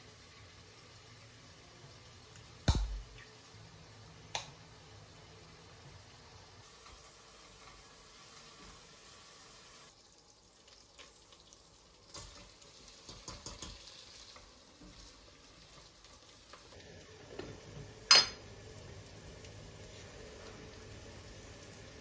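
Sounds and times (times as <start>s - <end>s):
soup sizzling in a pot: 0.0s - 22.0s.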